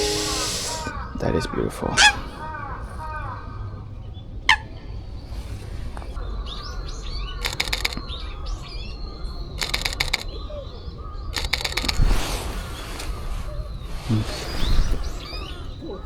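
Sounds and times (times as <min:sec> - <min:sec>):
small birds chirping: 0:06.2 - 0:12.1
camera shutter clicking: 0:07.4 - 0:08.0, 0:09.6 - 0:10.2, 0:11.4 - 0:12.0.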